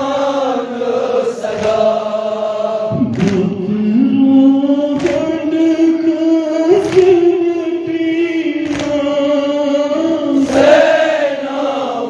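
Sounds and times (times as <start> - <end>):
group chanting in unison: 0.0 - 5.9, 8.3 - 12.0
short sharp beat: 2.8 - 3.8.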